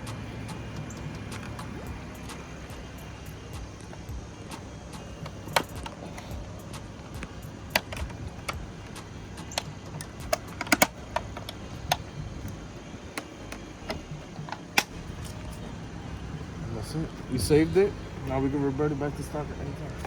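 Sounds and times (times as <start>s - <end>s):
plastic clips clicking and snapping: 0.5s - 15.6s.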